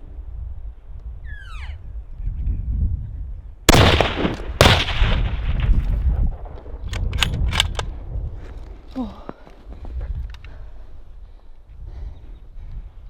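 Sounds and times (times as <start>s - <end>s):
rifle shots echoing: 3.7s - 7.8s.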